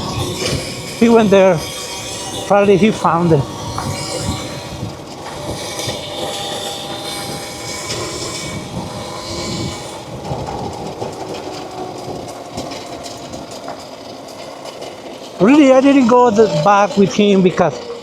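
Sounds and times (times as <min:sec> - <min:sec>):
drivetrain rattling clatter: 0:00.0 - 0:18.0
electric motor whine: 0:00.0 - 0:18.0
person talking: 0:15.4 - 0:17.9.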